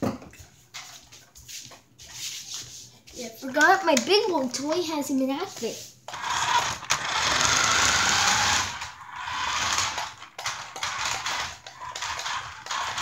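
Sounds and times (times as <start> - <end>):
small electric motor whirring: 6.1 - 13.0.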